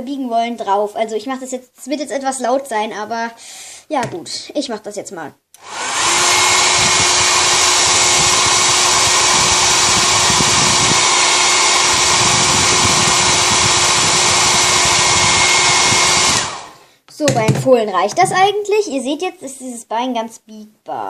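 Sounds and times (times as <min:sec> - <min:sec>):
hair dryer running: 0:05.6 - 0:16.8.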